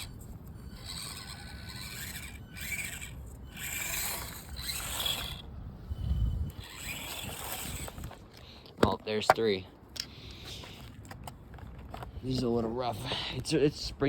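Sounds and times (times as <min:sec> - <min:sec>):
toy motor and gears whirring: 0:00.0 - 0:08.4
tires scraping on rough ground: 0:00.0 - 0:09.6.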